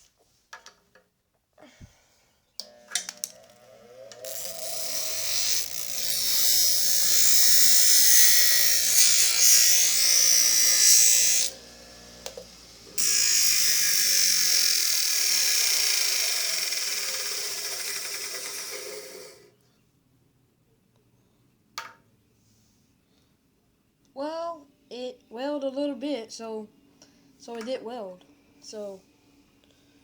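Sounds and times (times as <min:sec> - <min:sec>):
welder buzzing with hiss: 0:02.6 - 0:19.4.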